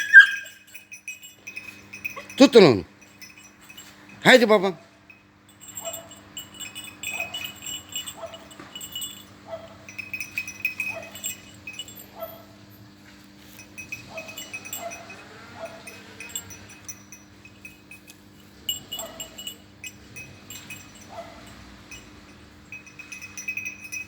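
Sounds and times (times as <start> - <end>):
dog yelping: 0.0 - 0.7, 14.1 - 16.4
high metallic jingling: 0.0 - 24.0.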